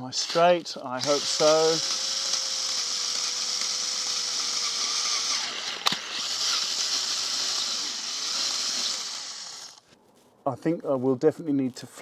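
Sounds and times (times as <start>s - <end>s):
electric drill running: 0.0s - 9.8s
sharp click: 5.7s - 6.0s.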